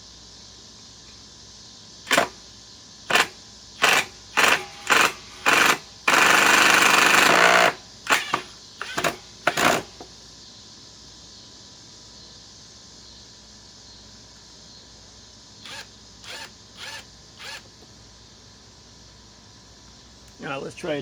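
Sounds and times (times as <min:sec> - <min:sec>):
impact driver hammering screw: 0:02.1 - 0:02.4, 0:03.1 - 0:10.1, 0:15.7 - 0:17.7.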